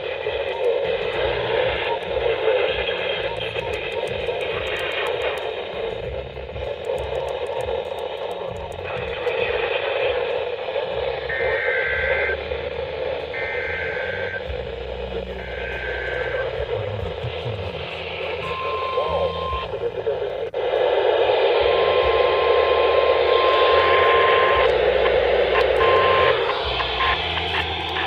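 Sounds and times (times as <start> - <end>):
radio static hiss: 0.0 - 28.0
steady warning alarm tone: 10.9 - 20.6, 21.4 - 28.0.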